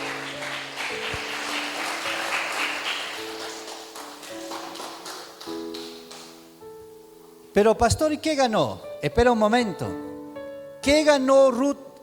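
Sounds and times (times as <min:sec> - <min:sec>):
congregation clapping: 0:00.0 - 0:06.4
church music chords: 0:00.0 - 0:12.0.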